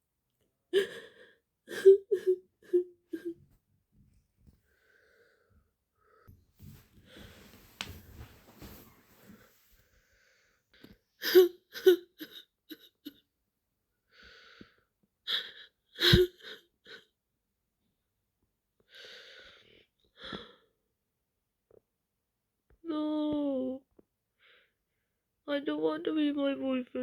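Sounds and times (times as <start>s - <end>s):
woman crying and sobbing: 0.8s - 3.4s, 11.2s - 13.2s, 15.3s - 17.1s.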